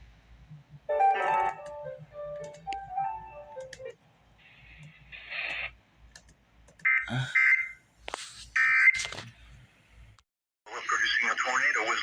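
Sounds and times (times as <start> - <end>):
sharp clicks: 4.8 - 6.9.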